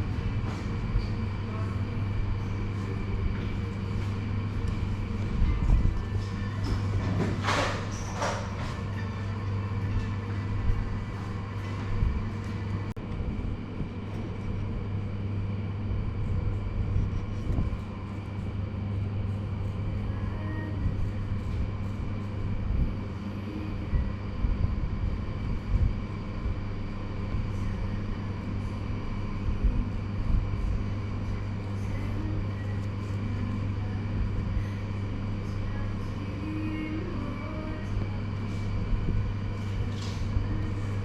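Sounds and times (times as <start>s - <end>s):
low hum: 0.0s - 41.0s.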